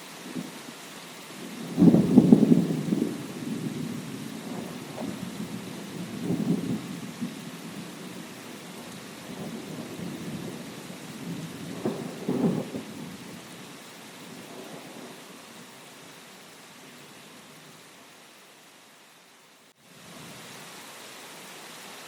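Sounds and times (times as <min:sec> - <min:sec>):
rain falling: 0:00.0 - 0:22.0
thunder rumbling: 0:01.4 - 0:13.6.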